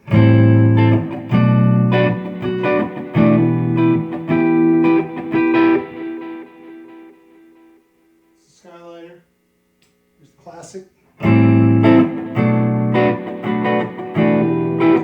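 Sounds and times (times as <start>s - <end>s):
clean electric guitar lick: 0.0s - 7.6s, 11.2s - 15.0s.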